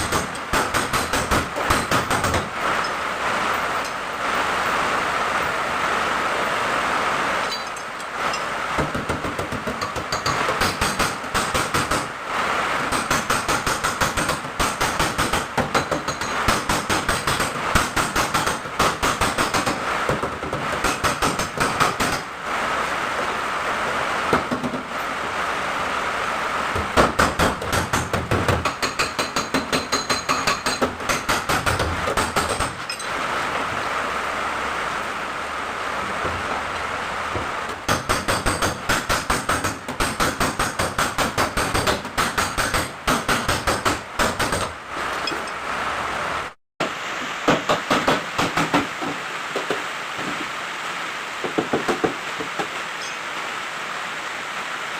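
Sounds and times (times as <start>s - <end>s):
hammering on sheet steel: 0.0s - 3.0s, 8.7s - 12.2s, 12.8s - 22.3s, 26.7s - 33.0s, 37.4s - 44.8s, 47.4s - 49.8s, 51.4s - 53.2s.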